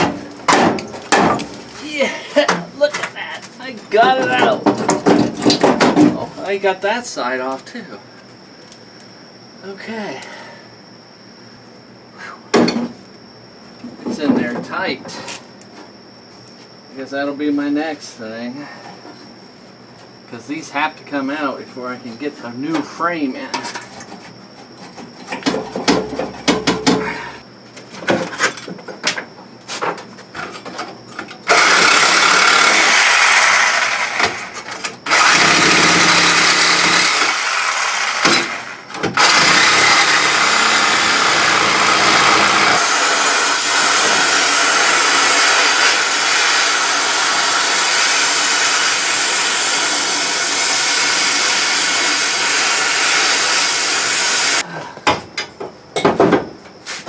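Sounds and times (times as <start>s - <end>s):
metal clanks and knocks: 4.1s - 6.3s, 25.0s - 27.2s
power tool on steel: 31.5s - 54.6s.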